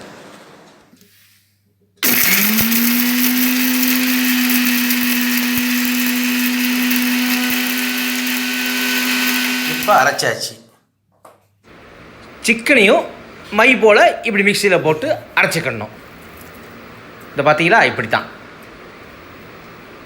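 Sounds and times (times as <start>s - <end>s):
mixer grinder motor whine: 2.0s - 10.2s.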